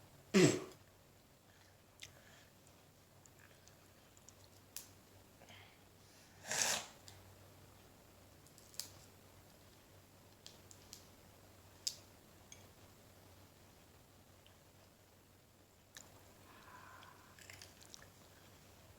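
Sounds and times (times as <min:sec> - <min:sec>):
peanut shells cracking: 0:08.4 - 0:09.1.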